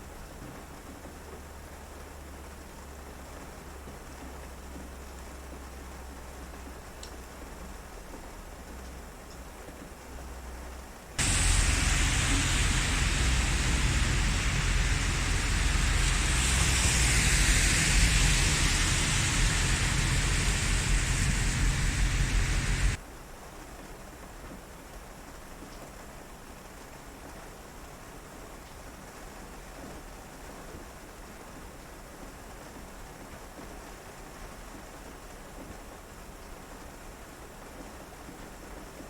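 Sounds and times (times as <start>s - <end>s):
faint steady hiss: 10.2s - 29.7s
heavy rain: 11.2s - 23.0s.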